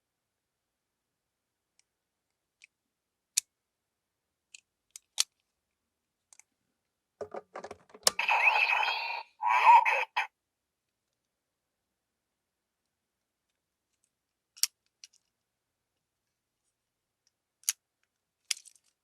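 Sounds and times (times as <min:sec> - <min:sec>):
louder bursts of toy sound: 0:08.2 - 0:10.3.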